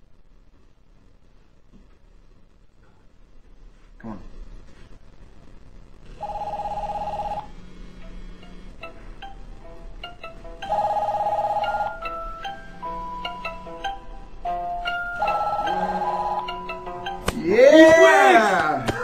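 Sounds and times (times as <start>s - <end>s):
two-tone trilling phone ring: 6.2s - 7.7s, 10.6s - 17.2s
melodic ringtone: 6.2s - 17.3s.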